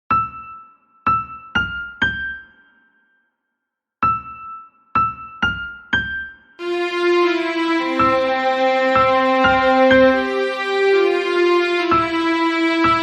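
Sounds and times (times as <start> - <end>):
keyboard melody: 6.6 - 13.0.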